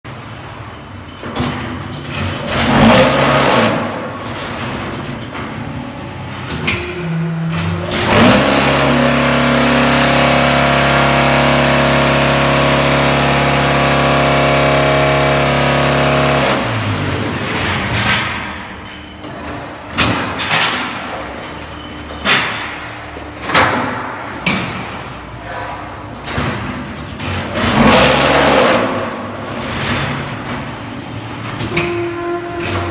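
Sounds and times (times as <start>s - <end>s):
machine clanks and knocks: 1.0s - 9.3s, 16.6s - 32.9s.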